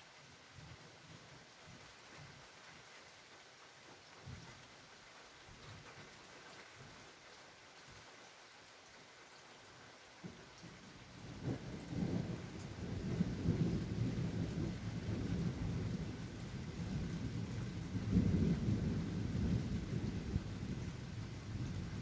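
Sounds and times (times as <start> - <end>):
light rain: 0.0 - 22.0
thunder rumbling: 11.2 - 22.0.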